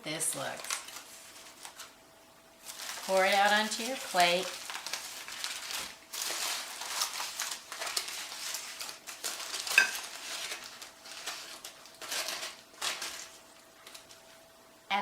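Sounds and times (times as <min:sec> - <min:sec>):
foil rustling: 0:00.0 - 0:02.0, 0:02.6 - 0:14.4
food scraped from foil packet: 0:02.6 - 0:14.3.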